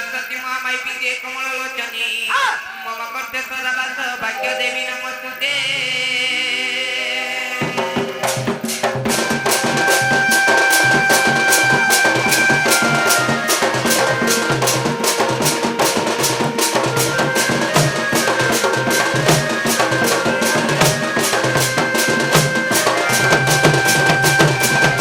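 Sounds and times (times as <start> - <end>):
melody line: 4.4 - 6.4
held note: 4.4 - 8.2.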